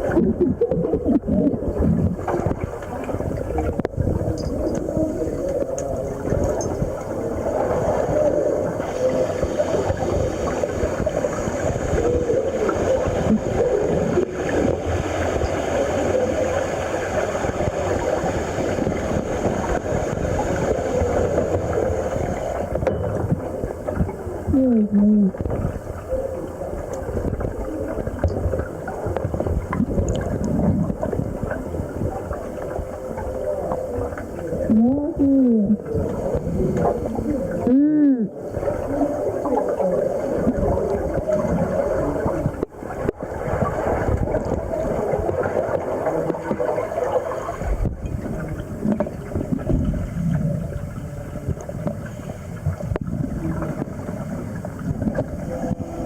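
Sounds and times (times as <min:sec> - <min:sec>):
underwater rush and bubbling: 0:00.0 - 0:56.0.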